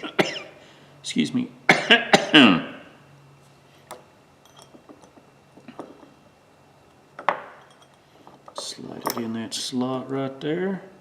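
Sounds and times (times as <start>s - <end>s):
person coughing: 0.0s - 0.6s, 1.7s - 2.7s.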